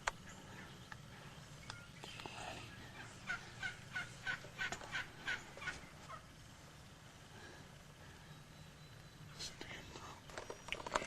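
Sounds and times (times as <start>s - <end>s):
turkey yelping: 2.9s - 6.3s.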